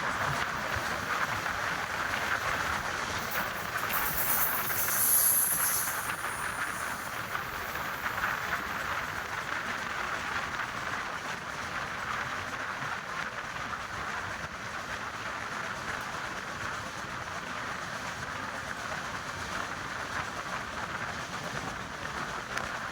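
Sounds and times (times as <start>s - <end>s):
train running on rails: 0.0s - 12.4s.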